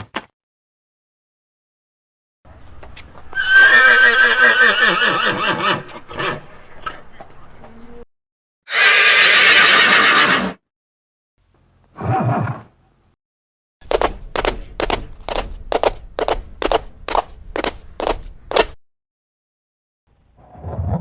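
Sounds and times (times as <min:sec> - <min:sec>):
horse whinnying: 0:03.3 - 0:06.4, 0:08.7 - 0:10.6, 0:12.0 - 0:12.7.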